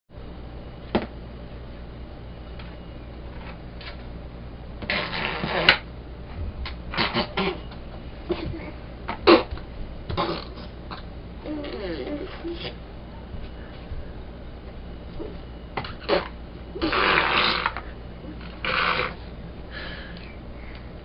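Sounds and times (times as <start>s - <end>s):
person blowing raspberries: 4.8s - 5.9s, 6.9s - 7.7s, 10.1s - 12.8s, 15.8s - 19.2s.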